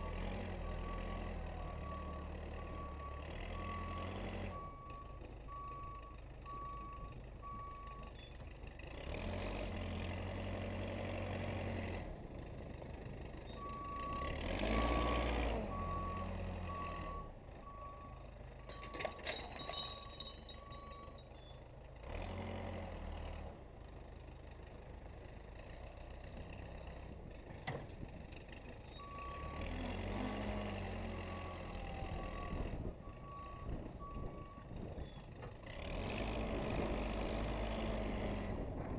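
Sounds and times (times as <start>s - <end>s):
backhoe engine revving: 0.0s - 18.0s, 22.0s - 23.6s, 24.9s - 38.9s
sharp metallic clanks: 18.7s - 21.4s.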